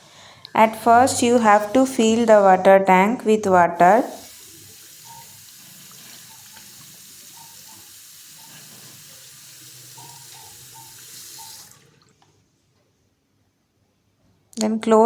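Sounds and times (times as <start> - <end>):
tap water filling plastic tank: 4.0 - 12.3.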